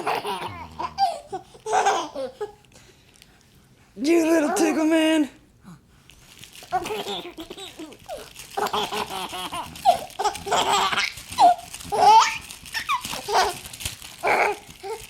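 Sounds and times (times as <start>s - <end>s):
baby laughing: 0.0s - 2.6s, 6.7s - 13.6s.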